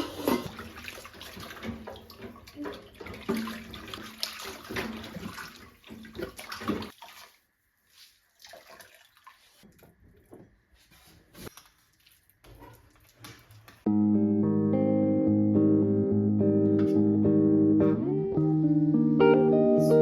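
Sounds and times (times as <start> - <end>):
tap water running into sink: 0.0 - 7.2.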